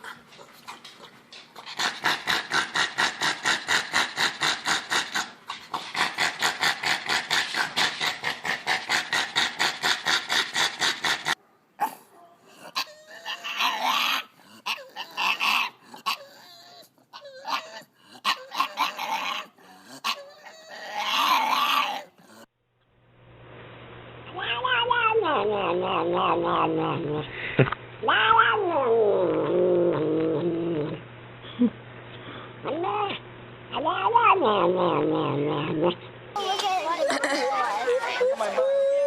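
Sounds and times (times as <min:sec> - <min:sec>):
dog yelping: 0:11.8 - 0:22.1, 0:36.8 - 0:39.0
dog whining and howling: 0:12.6 - 0:22.2, 0:28.1 - 0:31.0, 0:36.8 - 0:39.0.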